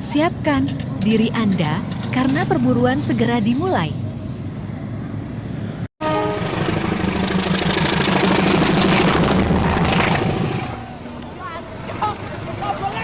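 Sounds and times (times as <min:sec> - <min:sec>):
diesel bus engine running: 0:00.0 - 0:05.9.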